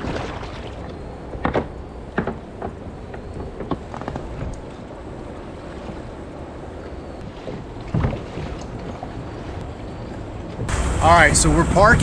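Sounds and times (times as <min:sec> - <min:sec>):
rushing river water: 0:03.8 - 0:12.0
kayak knocks: 0:07.2 - 0:09.6.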